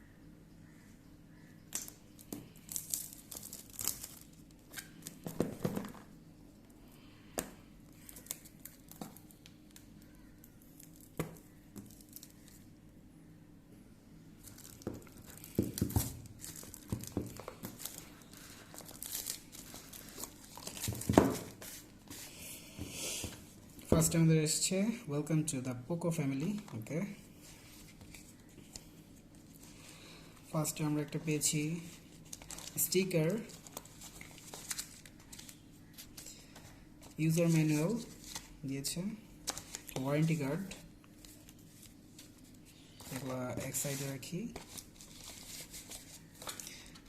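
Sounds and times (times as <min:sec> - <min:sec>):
packaging crinkling and tearing: 0:01.8 - 0:05.5, 0:08.0 - 0:12.6, 0:14.4 - 0:21.9, 0:32.0 - 0:36.3, 0:39.4 - 0:47.0.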